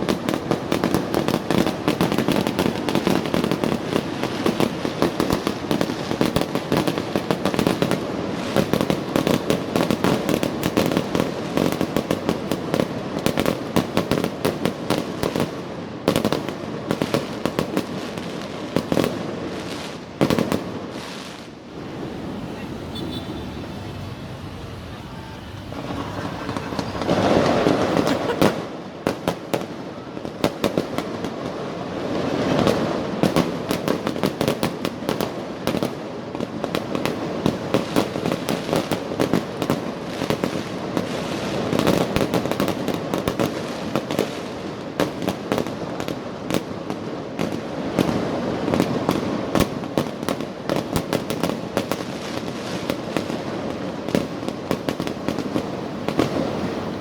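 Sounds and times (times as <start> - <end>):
firecrackers cracking and popping: 0.0 - 21.6, 25.6 - 56.8
fireworks hissing: 20.7 - 29.2, 55.4 - 57.0.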